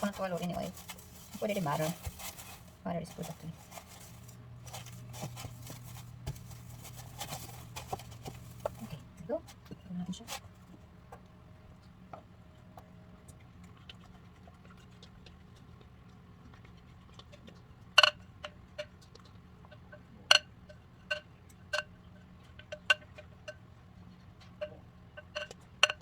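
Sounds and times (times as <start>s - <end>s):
batter being scraped: 0.0s - 9.0s.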